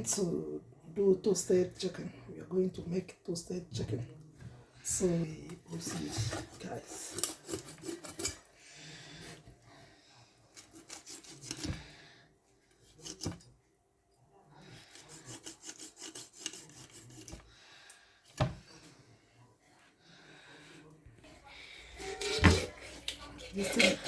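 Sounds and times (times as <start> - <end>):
rubbing and scraping strokes: 14.7 - 17.5.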